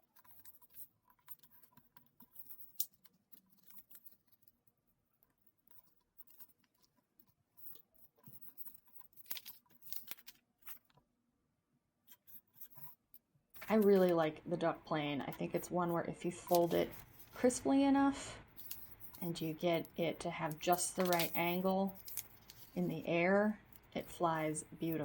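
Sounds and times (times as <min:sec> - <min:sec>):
paper folding and rustling: 0:07.6 - 0:10.9, 0:16.5 - 0:17.5, 0:20.6 - 0:23.1.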